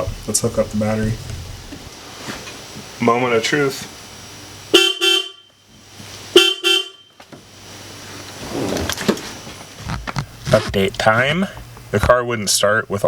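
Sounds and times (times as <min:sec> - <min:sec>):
car horn honking: 0:04.7 - 0:05.6, 0:06.3 - 0:07.2.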